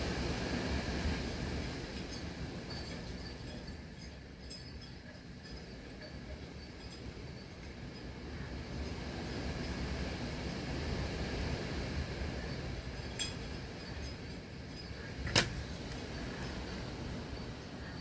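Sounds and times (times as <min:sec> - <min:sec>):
hurricane wind gusting: 0:08.3 - 0:18.0.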